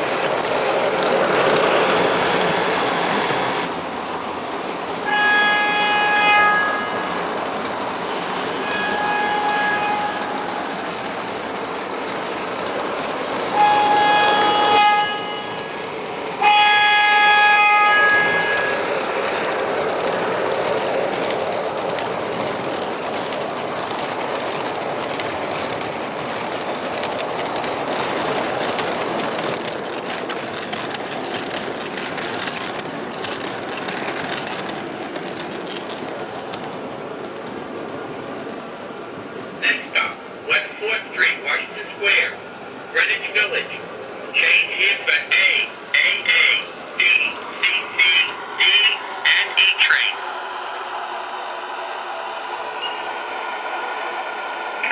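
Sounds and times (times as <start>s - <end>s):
model train clickety-clack running: 0.0s - 50.1s
model train horn blasts: 5.0s - 7.0s, 8.6s - 10.4s, 13.6s - 15.8s, 16.4s - 18.8s.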